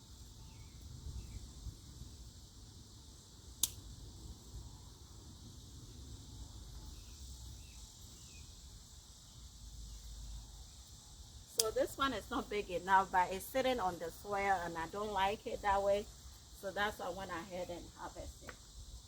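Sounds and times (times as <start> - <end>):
crickets chirring: 0.0 - 19.0
sharp click: 3.6 - 3.8.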